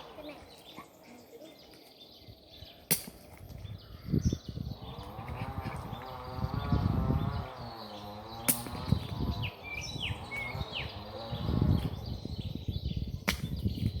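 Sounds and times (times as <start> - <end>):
small bird chirping: 0.0 - 14.0
low rumbling noise: 4.2 - 13.2
insect buzzing: 4.6 - 12.5.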